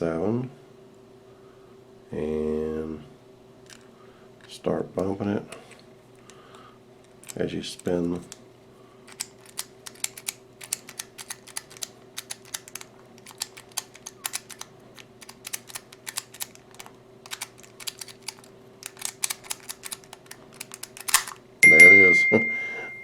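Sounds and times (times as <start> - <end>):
padlock dial clicking: 9.1 - 21.4.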